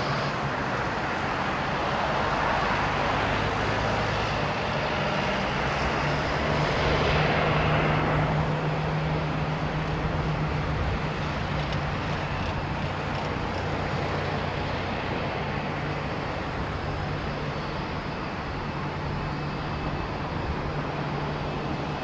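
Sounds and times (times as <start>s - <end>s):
jet engine rumble: 0.0s - 22.0s.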